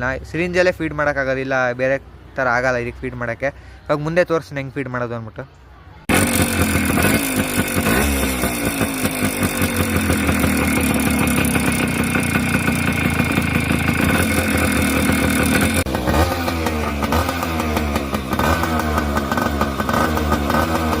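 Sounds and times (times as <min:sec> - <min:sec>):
two-stroke motorcycle engine revving: 0:06.1 - 0:21.0.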